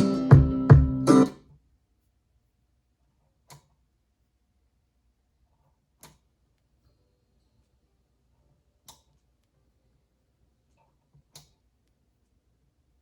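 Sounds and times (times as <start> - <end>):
guitar music with sharp beats: 0.0 - 1.4.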